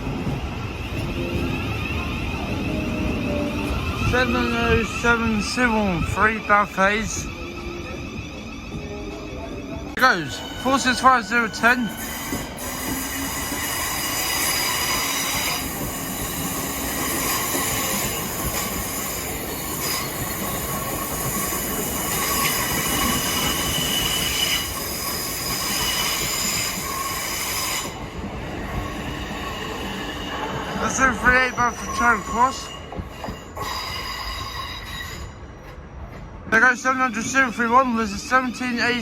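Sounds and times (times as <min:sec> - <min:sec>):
train rail noise: 0:00.0 - 0:39.0.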